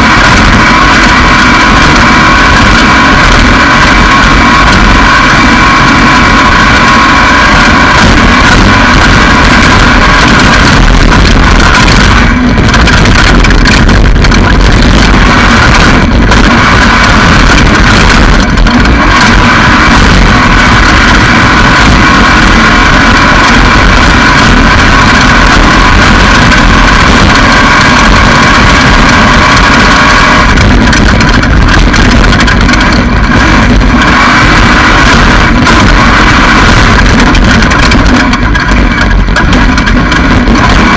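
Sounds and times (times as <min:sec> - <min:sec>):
race vehicle engine running hard: 0:00.0 - 0:40.9
rattle: 0:00.0 - 0:40.9
rushing wind: 0:00.0 - 0:40.9.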